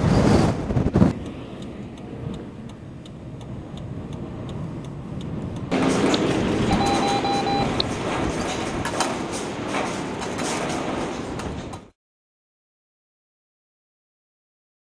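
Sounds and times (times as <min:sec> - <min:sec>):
low rumble: 0:00.0 - 0:11.8
wind buffeting microphone: 0:00.0 - 0:11.9
faint regular ticking: 0:01.2 - 0:05.8
electronic beeps: 0:06.7 - 0:07.8.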